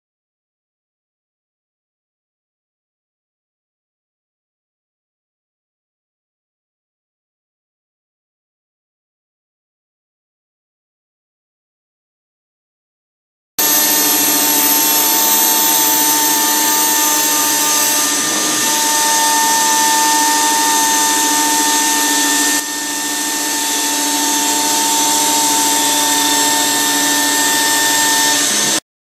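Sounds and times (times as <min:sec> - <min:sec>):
metal cutting hiss: 0:13.6 - 0:28.8
spindle whine: 0:13.6 - 0:28.8.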